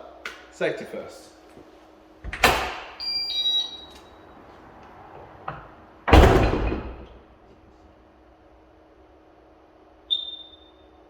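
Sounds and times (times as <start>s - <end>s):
heavy door thud: 2.2s - 3.0s, 5.4s - 7.3s
electronic beep tones: 3.0s - 4.0s.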